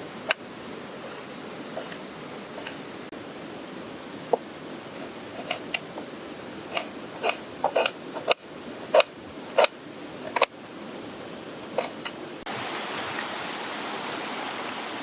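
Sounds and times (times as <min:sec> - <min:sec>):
stream water rushing: 0:11.0 - 0:15.0.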